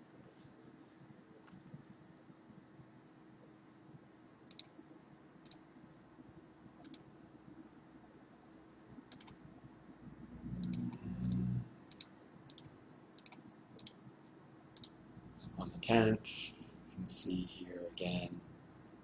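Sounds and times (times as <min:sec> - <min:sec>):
low steady hum: 0:00.0 - 0:19.0
computer mouse clicks: 0:04.5 - 0:04.8, 0:05.4 - 0:05.7, 0:06.8 - 0:07.1, 0:09.1 - 0:09.4, 0:10.4 - 0:14.0, 0:14.8 - 0:15.0.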